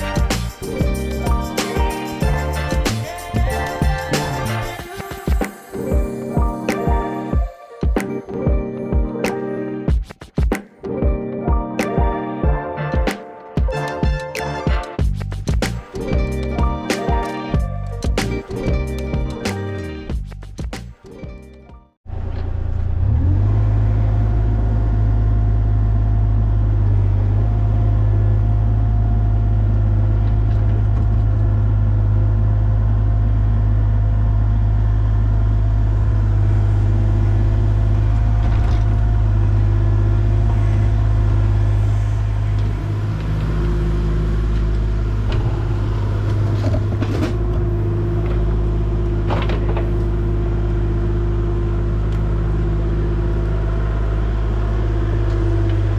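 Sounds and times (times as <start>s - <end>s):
diesel engine running: 22.1s - 55.9s.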